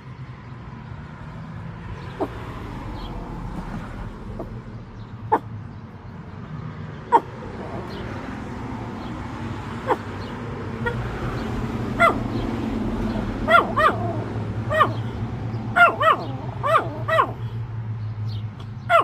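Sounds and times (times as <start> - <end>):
animal honking calls: 10.8 - 15.1.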